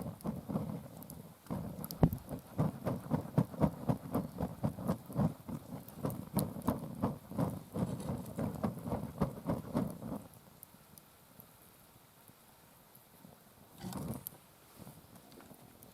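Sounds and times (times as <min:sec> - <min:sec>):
paper hand fan flapping: 0:00.0 - 0:10.3.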